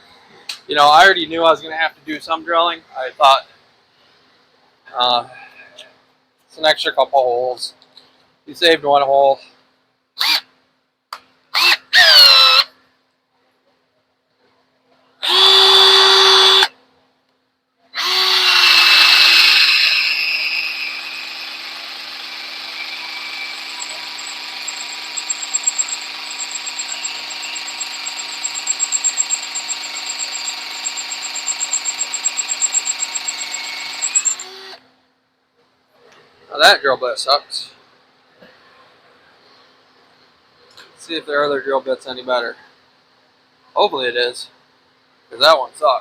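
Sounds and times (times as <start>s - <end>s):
power drill boring into metal: 11.6s - 12.7s, 15.2s - 16.7s, 18.0s - 34.8s.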